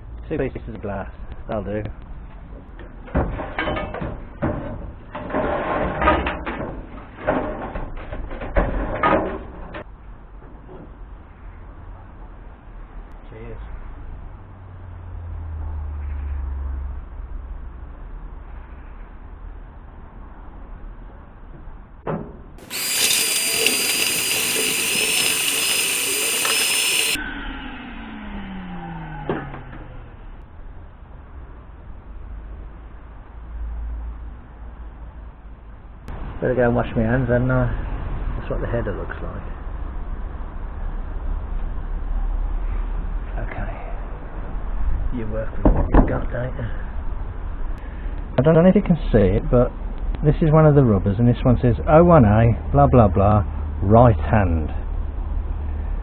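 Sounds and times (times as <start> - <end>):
power tool whining: 22.6 - 27.2.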